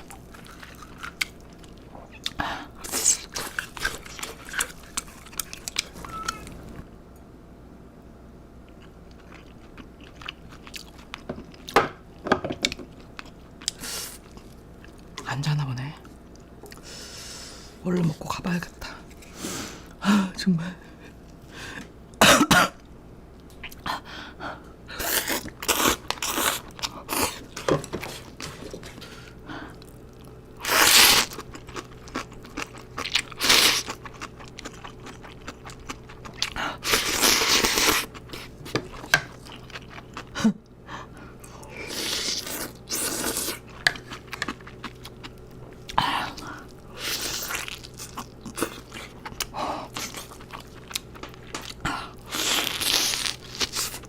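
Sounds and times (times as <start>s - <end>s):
person crunching and chewing: 0.0s - 6.7s, 8.7s - 11.8s, 25.0s - 40.4s, 41.4s - 54.0s.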